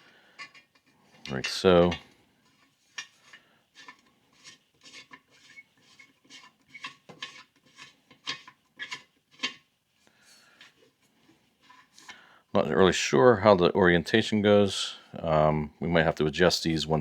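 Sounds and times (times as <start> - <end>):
metal threads scraping and clicking: 0.4 - 9.6.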